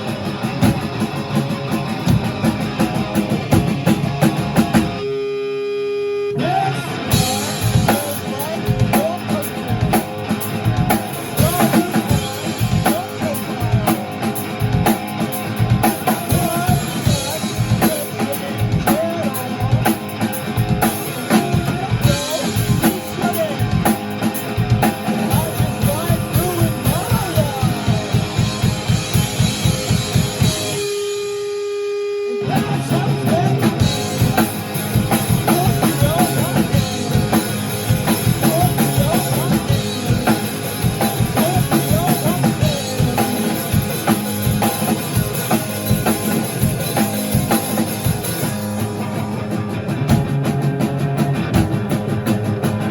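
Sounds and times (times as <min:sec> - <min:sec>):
rock band playing: 0:00.0 - 0:52.9
person singing: 0:06.3 - 0:14.6, 0:15.7 - 0:28.8, 0:32.4 - 0:45.3.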